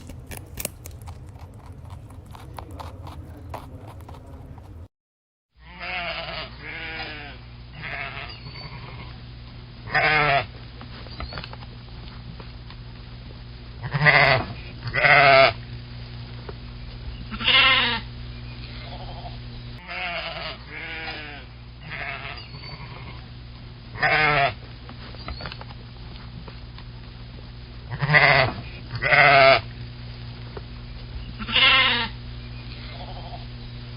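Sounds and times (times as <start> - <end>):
steady low hum: 0.0 - 4.9, 5.6 - 33.9
livestock bleating: 5.6 - 9.1, 9.9 - 10.5, 13.8 - 15.6, 17.3 - 18.1, 18.7 - 23.2, 24.0 - 24.6, 27.9 - 29.6, 31.4 - 32.2, 32.8 - 33.5.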